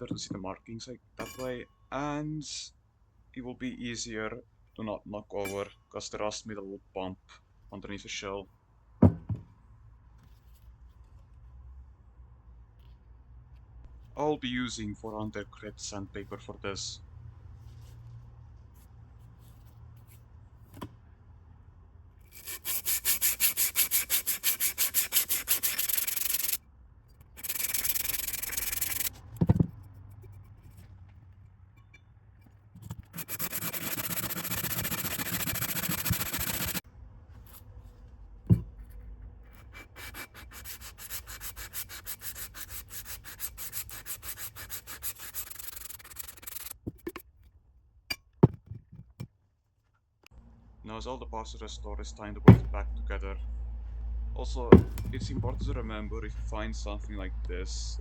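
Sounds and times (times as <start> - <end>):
sandpaper scraping metal: 22.3 - 26.6, 27.2 - 29.1, 33.0 - 36.8, 39.5 - 47.2
short knocks: 52.5 - 52.8, 54.7 - 55.8.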